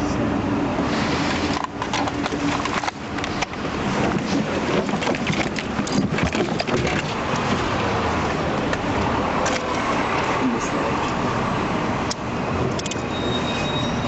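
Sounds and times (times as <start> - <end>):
clatter of knocks and clicks: 1.5 - 7.6.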